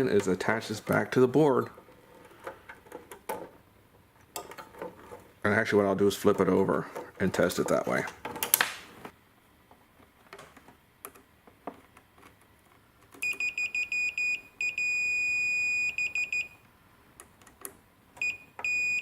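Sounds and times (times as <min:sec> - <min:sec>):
multimeter continuity beeps: 0:13.2 - 0:16.6, 0:18.2 - 0:19.0.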